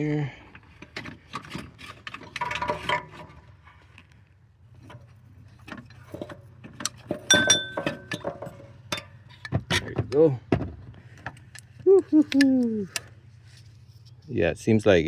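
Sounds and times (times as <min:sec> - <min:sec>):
metallic knocks and clinks: 0:07.0 - 0:09.6
metal clank ringing: 0:07.2 - 0:09.1.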